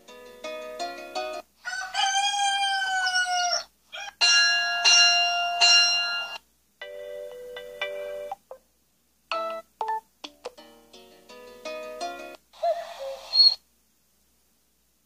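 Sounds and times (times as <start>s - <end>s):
recorded rooster crow: 1.6s - 4.9s.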